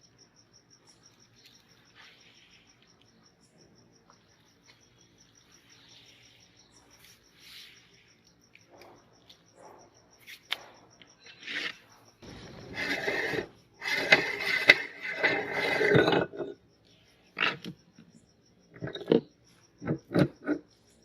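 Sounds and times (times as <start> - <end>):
crickets chirping: 0.0 - 21.0
scraping bursts: 11.3 - 16.5.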